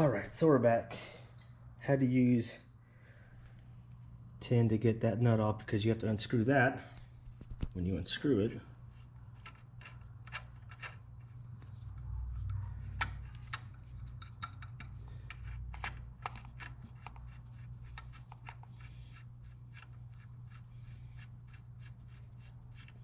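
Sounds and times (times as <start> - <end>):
steady low hum: 0.0 - 23.0
wrench and parts clicking: 9.4 - 11.1, 12.4 - 19.9.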